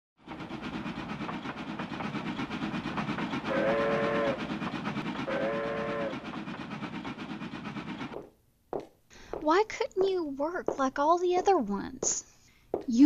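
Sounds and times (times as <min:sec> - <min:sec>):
train wheels clattering: 0:00.2 - 0:08.3
train horn blasts: 0:03.5 - 0:04.4, 0:05.2 - 0:06.2.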